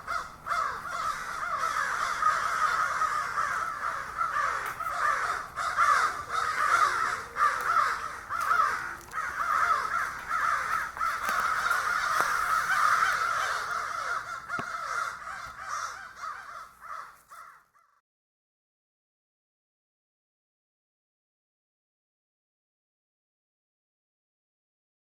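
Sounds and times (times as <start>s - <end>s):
crows cawing: 0.0s - 18.0s.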